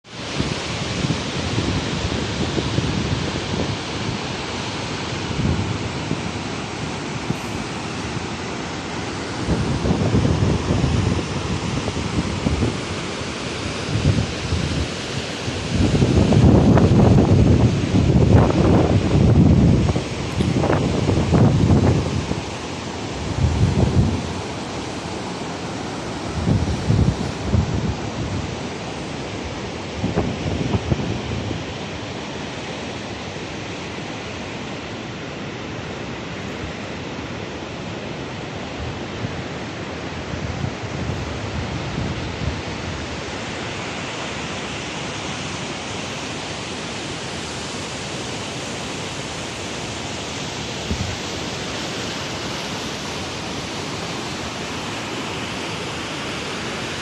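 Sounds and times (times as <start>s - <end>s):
wind blowing: 0.1s - 57.0s
wind buffeting microphone: 5.1s - 32.0s, 40.2s - 43.4s, 50.8s - 51.6s.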